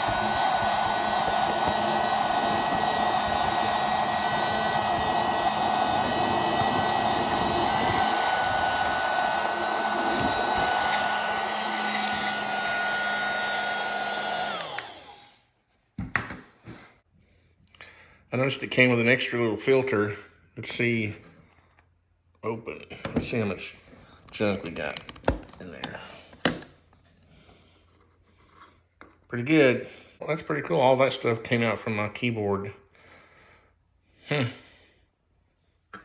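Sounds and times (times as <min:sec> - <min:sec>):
mini vacuum cleaner whining: 0:00.0 - 0:15.4.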